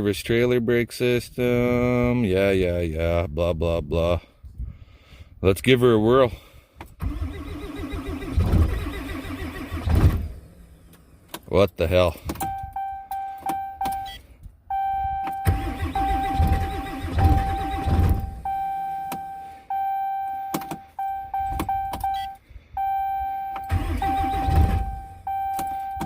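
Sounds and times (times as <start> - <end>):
diesel engine cranking: 6.9 - 14.2, 15.0 - 26.0
dashboard warning chime: 12.4 - 26.0.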